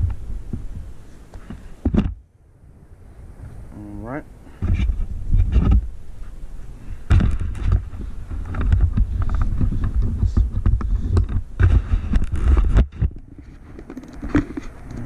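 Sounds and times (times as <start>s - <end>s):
wind buffeting microphone: 0.0s - 15.0s
microphone handling knocks: 1.4s - 2.2s, 4.6s - 5.9s, 7.0s - 14.6s.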